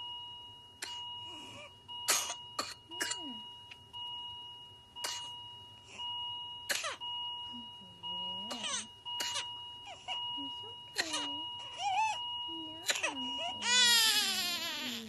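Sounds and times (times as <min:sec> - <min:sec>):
infant coughing: 0:00.8 - 0:01.1, 0:02.1 - 0:03.4, 0:05.0 - 0:05.4, 0:06.7 - 0:07.0, 0:08.5 - 0:10.2, 0:10.9 - 0:12.1, 0:12.8 - 0:13.8.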